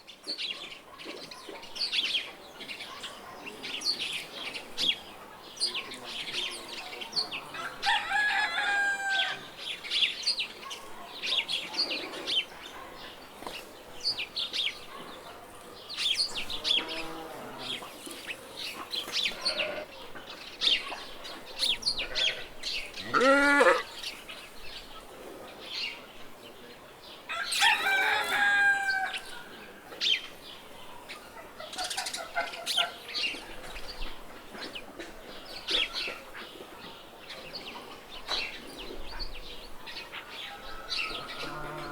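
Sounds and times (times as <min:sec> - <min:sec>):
small birds chirping: 0:00.0 - 0:41.9
rooster crowing: 0:07.6 - 0:09.5, 0:27.3 - 0:29.3, 0:40.5 - 0:41.9
chickens clucking: 0:24.7 - 0:41.9.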